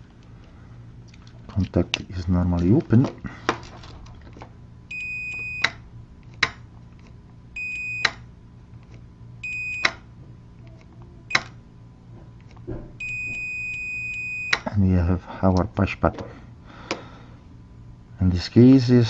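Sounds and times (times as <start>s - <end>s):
continuity tester beeps: 4.9s - 5.8s, 7.6s - 8.3s, 9.4s - 10.1s, 12.9s - 14.7s
switch clicks: 8.0s - 8.2s, 9.7s - 10.0s, 11.3s - 11.6s.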